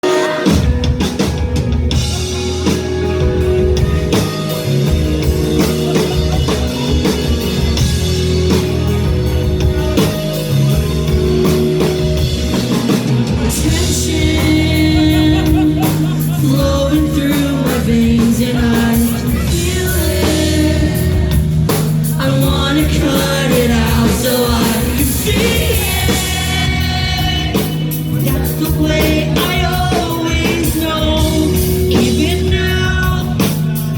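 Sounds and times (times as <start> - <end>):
live rock band playing: 0.0 - 33.9
person singing: 9.4 - 33.9.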